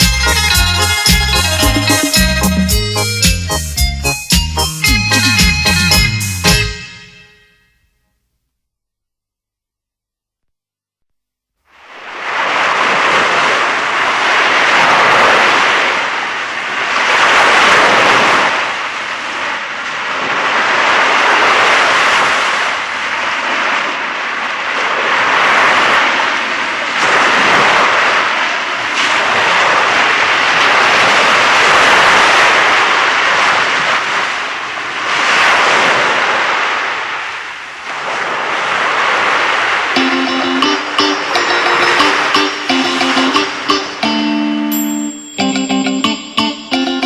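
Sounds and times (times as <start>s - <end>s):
keyboard rushing noise effect: 0.0s - 7.4s.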